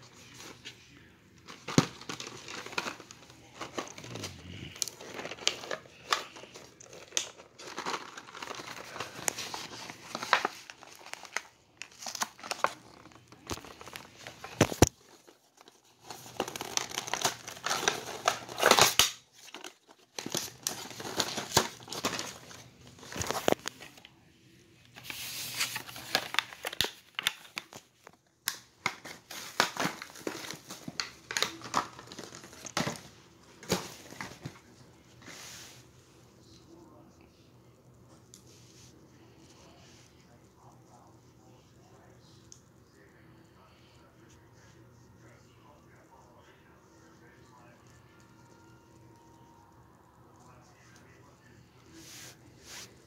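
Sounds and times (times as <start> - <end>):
plastic and cardboard crinkling: 0.0 - 24.2, 24.9 - 35.9.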